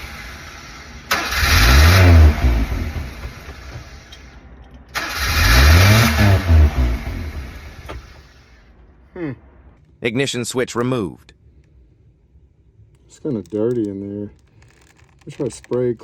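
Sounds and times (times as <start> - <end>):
engine starting and dying: 0.0 - 8.6.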